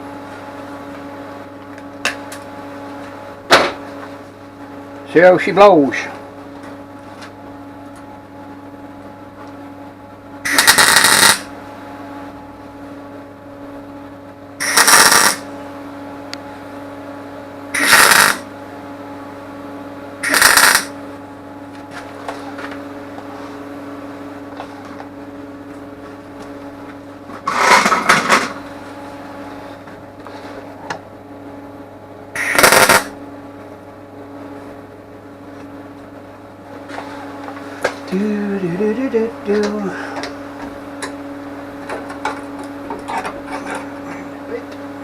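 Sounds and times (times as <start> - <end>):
steady electrical hum: 0.0 - 45.0
welding arc crackle: 10.5 - 11.5, 14.6 - 15.5, 17.8 - 18.5, 20.2 - 21.0, 32.4 - 33.2.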